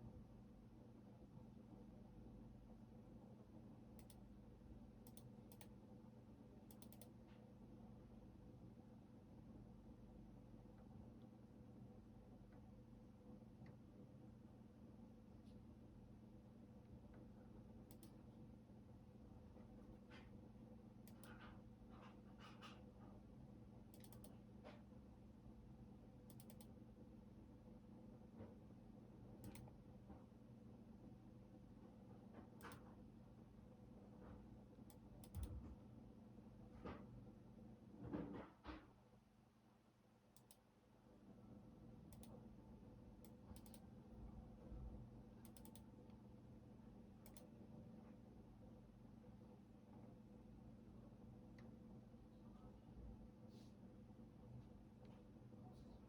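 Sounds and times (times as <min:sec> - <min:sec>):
low steady hum: 0:00.0 - 0:38.1, 0:39.0 - 0:56.0.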